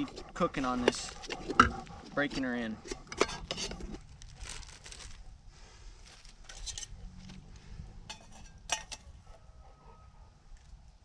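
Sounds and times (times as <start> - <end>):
metal cookware clinking: 8.1 - 9.1.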